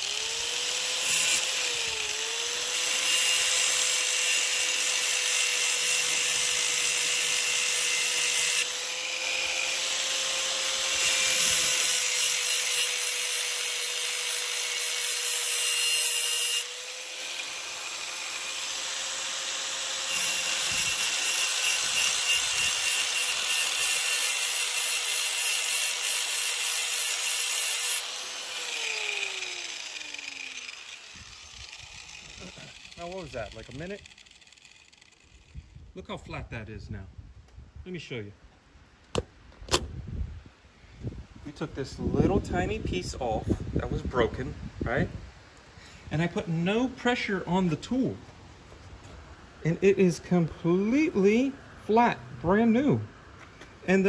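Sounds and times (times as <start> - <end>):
grinder motor winding down: 0.0 - 35.6
angle grinder cutting metal: 0.0 - 35.7.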